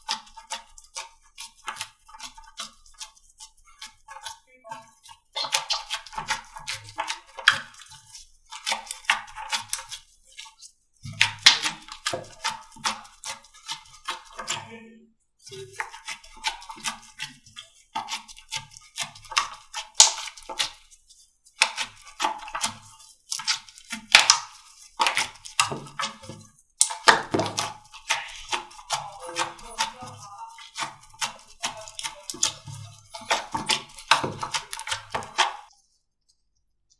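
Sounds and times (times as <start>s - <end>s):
slime wet clicks and crackles: 5.4s - 7.9s, 11.2s - 13.3s, 19.2s - 20.8s, 21.6s - 26.2s, 26.8s - 30.1s, 30.7s - 35.7s.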